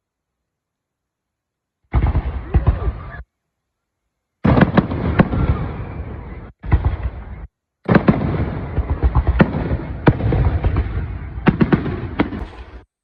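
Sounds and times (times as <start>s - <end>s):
fireworks rumble and crackle: 1.8s - 3.3s, 4.4s - 13.0s
sharp firework bangs: 1.9s - 3.2s, 4.4s - 13.0s.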